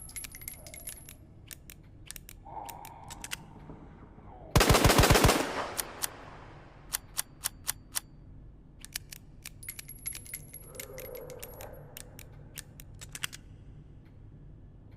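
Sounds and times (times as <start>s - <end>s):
light metallic clinks: 0.0s - 1.3s, 9.0s - 13.4s
revolver mechanism clicking: 0.0s - 3.7s, 8.8s - 14.2s.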